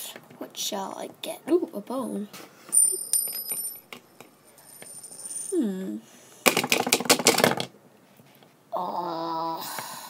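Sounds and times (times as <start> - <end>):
plastic toys clicking and rattling: 6.4 - 7.7.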